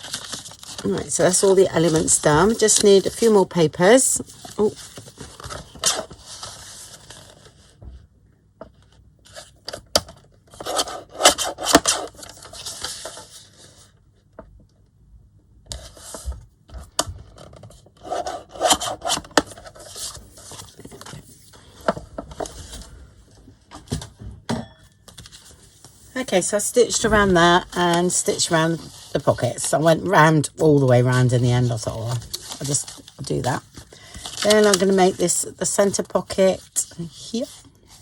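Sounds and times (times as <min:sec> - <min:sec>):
paper rubbing and scraping: 0:10.5 - 0:13.8, 0:17.6 - 0:21.8, 0:25.2 - 0:30.1.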